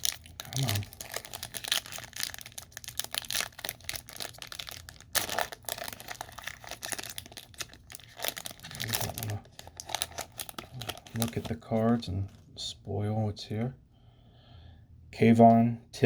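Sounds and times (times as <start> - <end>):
wrapper tearing and crinkling: 0.0 - 12.0
cards being handled: 5.1 - 12.0.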